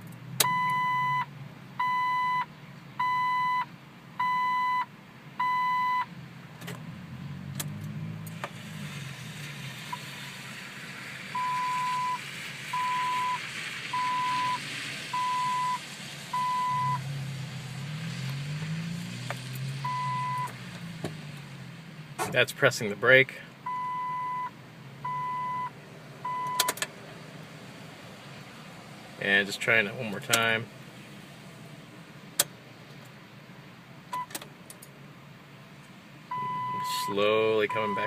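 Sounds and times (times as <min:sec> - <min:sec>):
electronic warning chime beeping: 0:00.4 - 0:01.2, 0:01.8 - 0:02.4, 0:03.0 - 0:03.6, 0:05.4 - 0:06.1, 0:11.4 - 0:12.2, 0:12.8 - 0:13.4, 0:14.0 - 0:14.6, 0:15.2 - 0:15.8, 0:16.4 - 0:17.0, 0:19.8 - 0:20.5, 0:25.1 - 0:25.7, 0:36.3 - 0:38.0.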